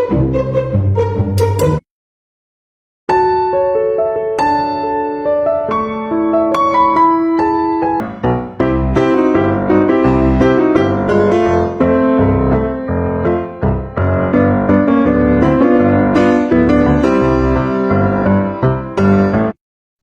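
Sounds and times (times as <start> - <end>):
piano chords over bass beat: 6.6 - 19.6.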